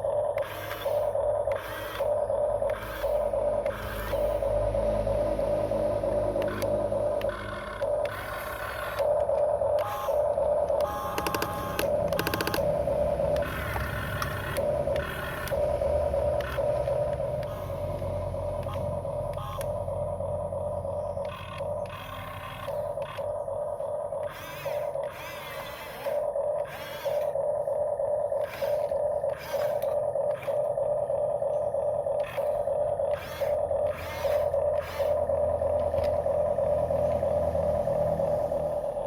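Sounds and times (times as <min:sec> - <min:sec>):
small electric motors whining: 0:00.0 - 0:39.0
short grinding scraping bursts: 0:21.2 - 0:23.2, 0:24.2 - 0:27.5, 0:28.4 - 0:31.1, 0:32.1 - 0:36.2.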